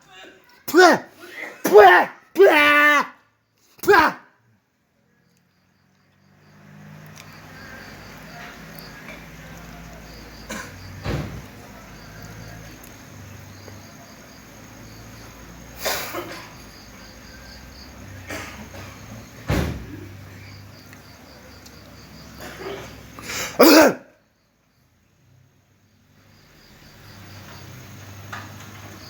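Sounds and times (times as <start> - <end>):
crickets chirping: 0.0 - 29.0
person coughing: 0.7 - 2.1, 10.5 - 10.8, 22.4 - 24.1.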